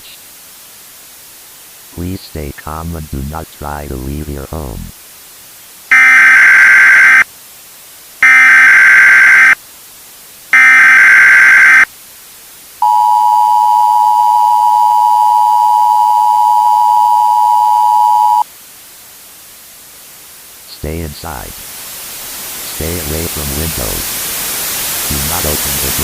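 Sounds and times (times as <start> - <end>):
digital data bursts: 5.9 - 7.2, 8.2 - 9.6, 10.6 - 11.9
two-tone attention signal: 5.9 - 7.2, 8.2 - 9.6, 10.6 - 11.9, 12.8 - 18.4.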